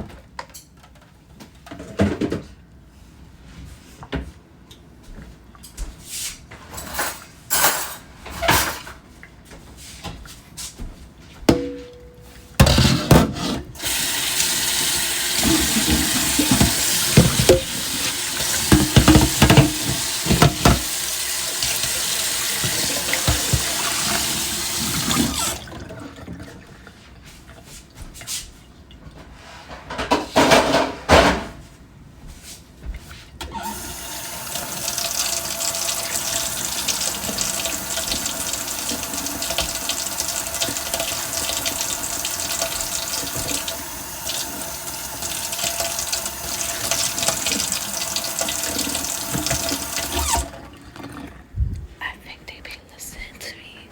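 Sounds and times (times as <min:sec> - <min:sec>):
dishes clattering: 0:06.6 - 0:09.0, 0:11.5 - 0:13.7, 0:14.6 - 0:21.0, 0:22.6 - 0:25.5
tap running into a sink: 0:13.8 - 0:25.6, 0:33.6 - 0:51.1.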